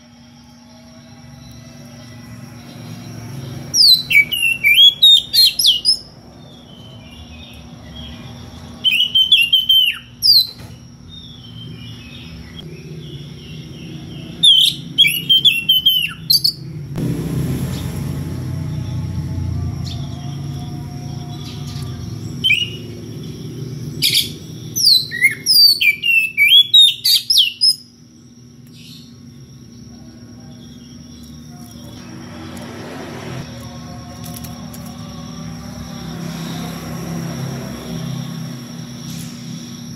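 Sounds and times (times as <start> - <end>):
magpie-robin singing: 3.6 - 10.5, 11.1 - 16.7, 21.2 - 27.9
low hum: 11.4 - 24.8.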